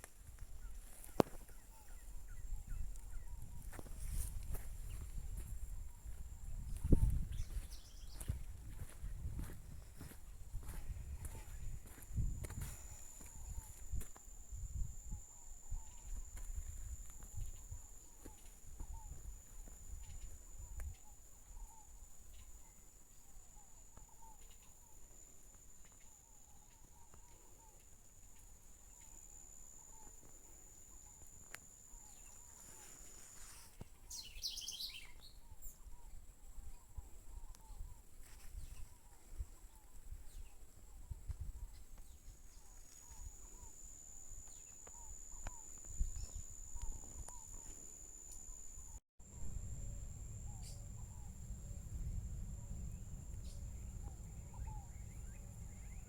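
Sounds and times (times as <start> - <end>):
short bird chirps: 33.5 - 35.8
insect trilling: 42.8 - 56.0
faint low rumble: 48.8 - 56.0
descending bird calls: 49.8 - 56.0.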